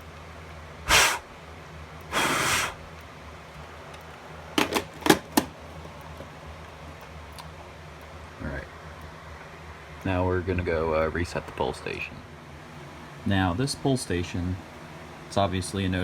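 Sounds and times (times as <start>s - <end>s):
breath blowing out air: 0.9s - 1.3s, 2.1s - 2.9s.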